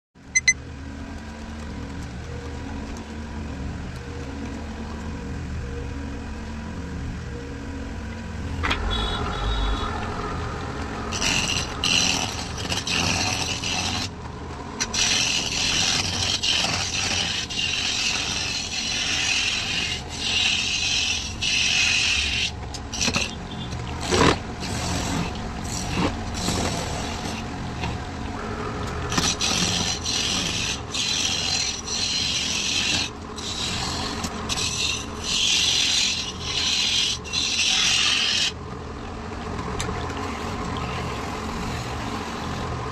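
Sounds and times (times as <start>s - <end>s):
wood scraping on a lathe: 11.1s - 14.2s, 14.8s - 27.6s, 28.4s - 38.6s, 40.3s - 42.9s.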